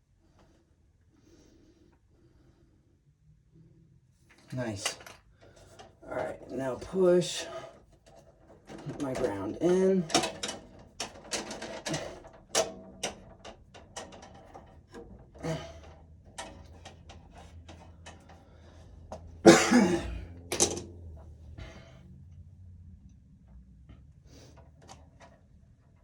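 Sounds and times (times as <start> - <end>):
clicks and taps of wires and tools: 4.3 - 7.0, 7.8 - 19.4, 20.4 - 21.3.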